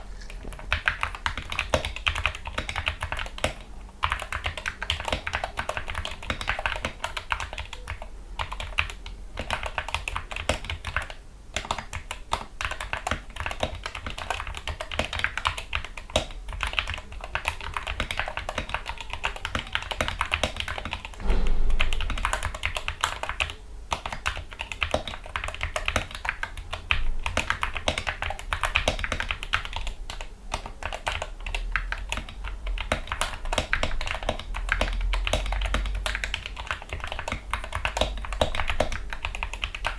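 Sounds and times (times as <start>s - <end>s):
fast typing on mechanical keyboard: 0.2s - 21.2s, 21.8s - 39.9s
deep thump: 21.2s - 22.6s.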